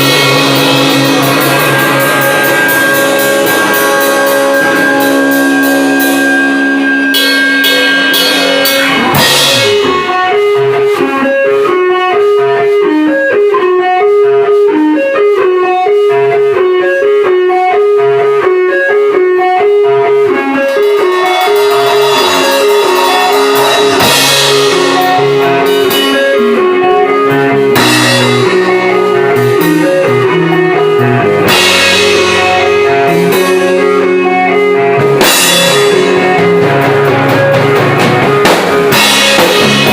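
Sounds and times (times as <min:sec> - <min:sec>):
cymbal crashes: 0:00.0 - 0:10.3, 0:20.7 - 0:26.2
electric guitar riff: 0:00.0 - 0:39.9
rock band playing live: 0:00.0 - 0:39.9.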